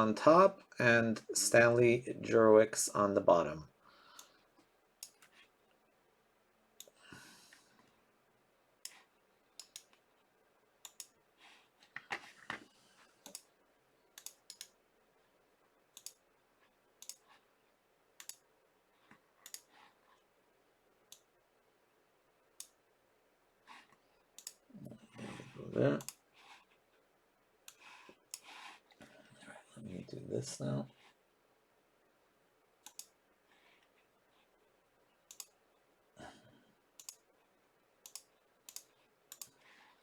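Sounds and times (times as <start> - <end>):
computer mouse clicks: 4.2 - 5.5, 8.8 - 10.0, 10.8 - 11.2, 13.2 - 13.5, 14.2 - 14.8, 15.9 - 16.2, 17.0 - 17.4, 18.2 - 18.4, 19.1 - 19.9, 22.6 - 22.8, 23.8 - 24.6, 26.0 - 26.2, 27.7 - 28.6, 32.8 - 33.2, 35.3 - 35.6, 37.0 - 37.3, 38.0 - 39.6
soft rustles: 11.4 - 13.2.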